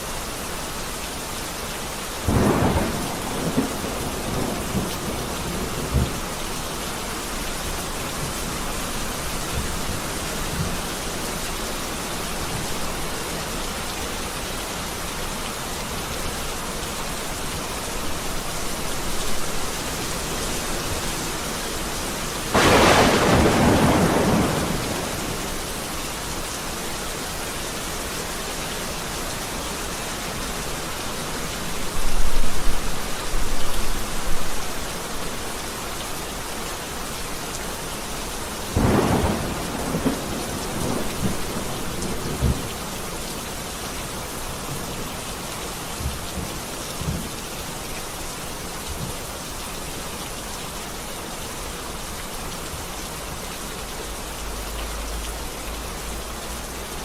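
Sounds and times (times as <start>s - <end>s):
heavy rain: 0.0s - 57.0s
thunder: 2.3s - 6.2s, 22.5s - 25.5s, 38.8s - 42.7s.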